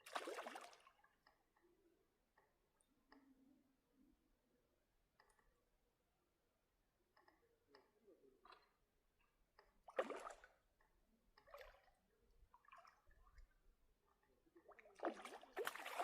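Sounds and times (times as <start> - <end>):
water splashing and sloshing: 0.0 - 1.3, 9.7 - 16.0.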